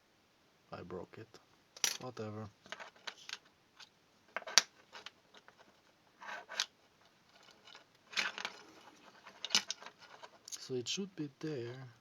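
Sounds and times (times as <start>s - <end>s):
plastic parts scraping rattle: 2.0s - 3.5s, 7.3s - 10.7s.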